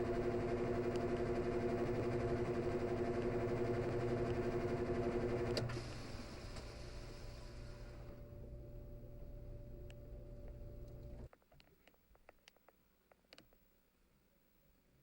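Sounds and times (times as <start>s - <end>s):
drain pump motor hum: 0.0s - 11.3s.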